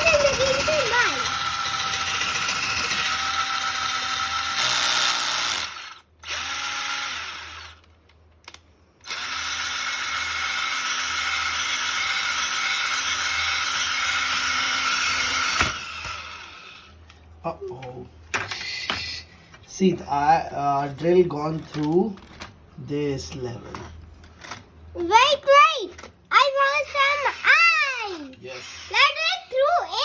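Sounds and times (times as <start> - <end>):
power drill boring into ice: 0.0 - 7.8, 9.0 - 16.9, 26.4 - 30.0.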